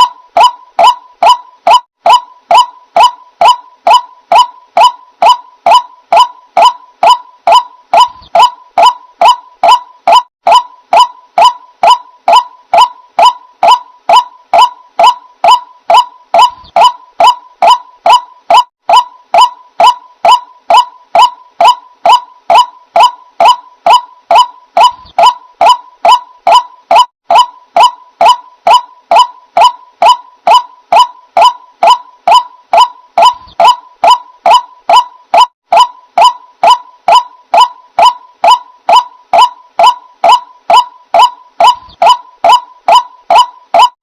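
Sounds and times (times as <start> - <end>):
waterhen calling: 2.0 - 18.3, 18.9 - 27.5, 28.3 - 35.0.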